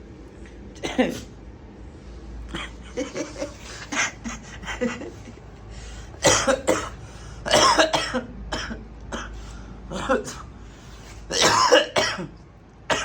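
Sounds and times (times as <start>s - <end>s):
person coughing: 0.8s - 1.3s, 2.5s - 5.2s, 6.2s - 10.5s, 11.3s - 13.0s.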